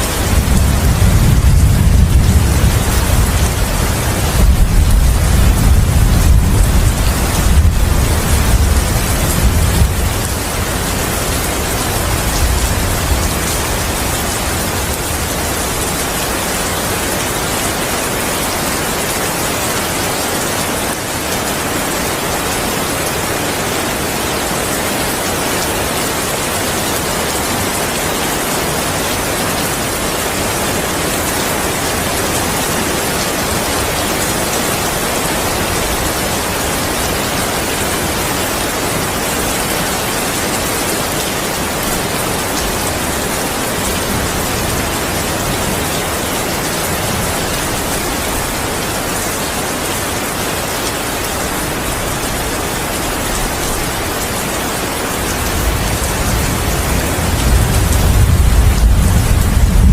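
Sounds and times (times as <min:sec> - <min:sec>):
heavy rain hissing: 0:00.0 - 0:59.9
low thunder rumble: 0:00.2 - 0:15.8, 0:55.4 - 0:59.9.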